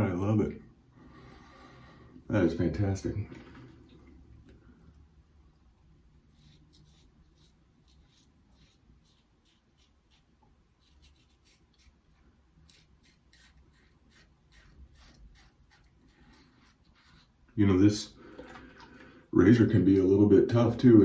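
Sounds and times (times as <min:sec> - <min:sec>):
razor scraping stubble: 0:06.3 - 0:17.4.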